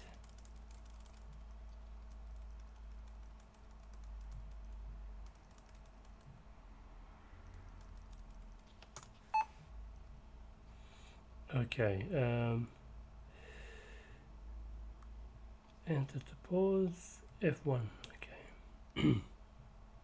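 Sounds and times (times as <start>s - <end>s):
laptop keyboard keys clicking: 0.0s - 6.3s, 7.4s - 9.2s.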